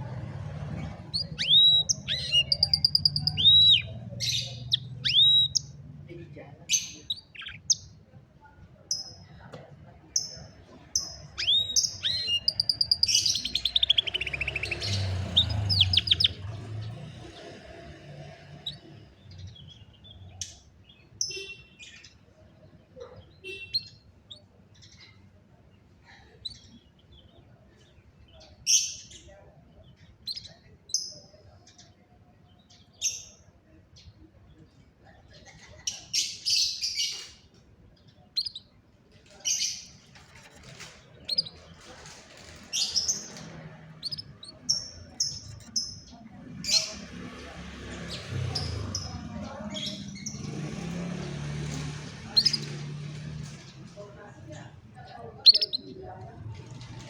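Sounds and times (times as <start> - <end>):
canary singing: 0.0 - 6.1, 6.7 - 8.1, 10.1 - 22.2, 23.1 - 25.2, 35.5 - 57.0.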